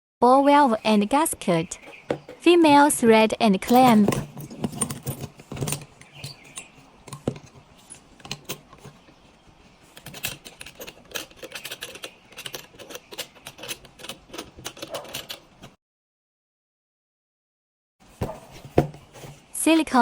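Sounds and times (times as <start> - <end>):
metal parts clicking together: 3.7 - 9.1, 9.9 - 15.8.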